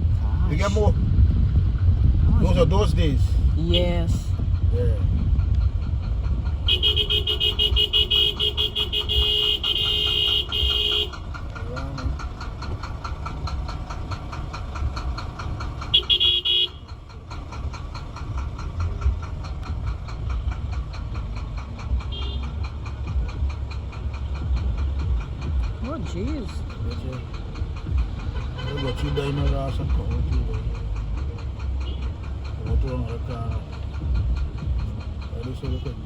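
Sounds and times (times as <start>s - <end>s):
traffic rumble: 0.0s - 36.0s
vehicle horn honking: 6.6s - 11.2s, 15.8s - 16.9s, 22.1s - 22.5s, 28.3s - 29.7s, 31.8s - 32.1s.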